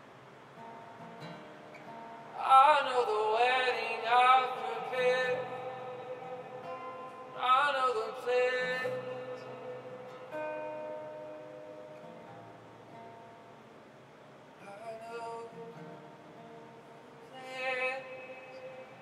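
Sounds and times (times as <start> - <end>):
man singing: 2.4 - 10.6, 14.6 - 15.8, 17.2 - 19.0.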